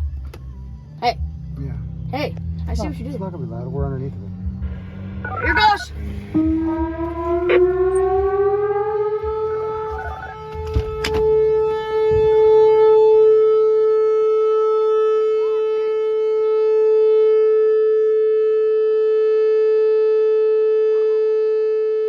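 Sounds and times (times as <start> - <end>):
warning siren tone: 4.5 - 22.0.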